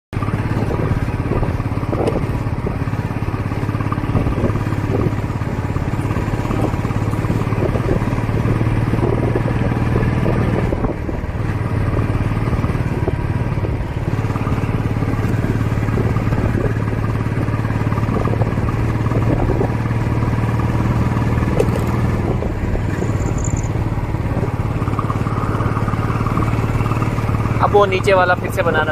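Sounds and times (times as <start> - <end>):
motorcycle engine running: 0.2 - 28.9.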